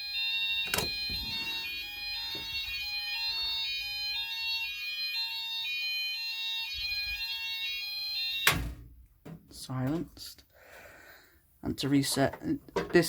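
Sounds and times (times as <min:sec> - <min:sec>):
two-tone fire alarm sounders: 0:00.0 - 0:08.7.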